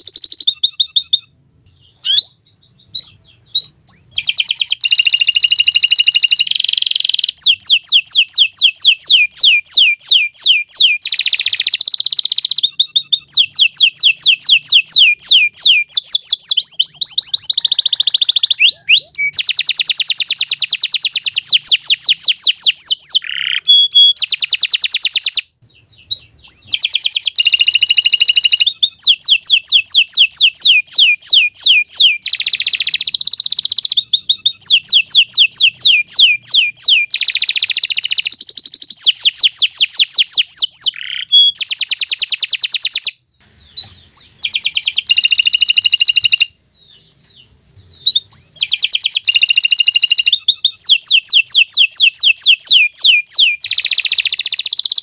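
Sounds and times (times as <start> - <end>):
canary singing trills: 0.0 - 55.0.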